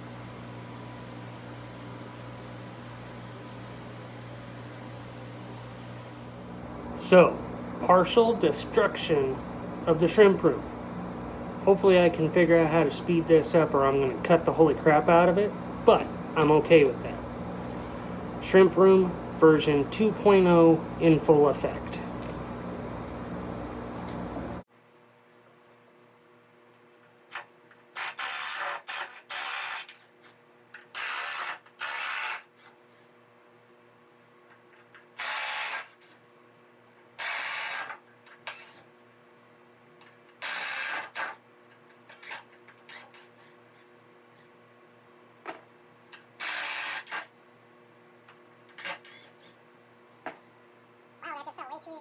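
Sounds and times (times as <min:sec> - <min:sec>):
steady low hum: 0:00.0 - 0:24.7
power drill driving screws: 0:30.9 - 0:32.6, 0:35.2 - 0:36.2, 0:37.2 - 0:38.8, 0:40.4 - 0:41.4, 0:46.4 - 0:47.3.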